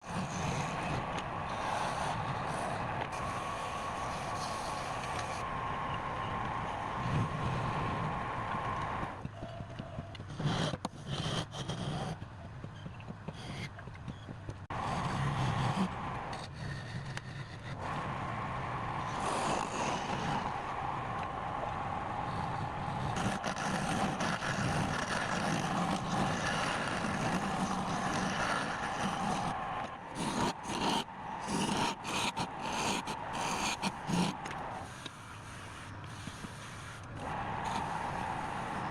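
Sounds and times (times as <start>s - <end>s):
lathe whine: 17.1s - 36.0s, 37.0s - 38.9s.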